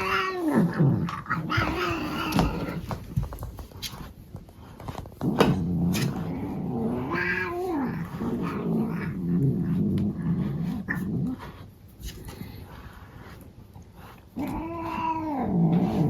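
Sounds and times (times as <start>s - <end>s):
cat growling yowl: 0.0s - 2.8s, 5.9s - 11.4s, 14.0s - 16.0s.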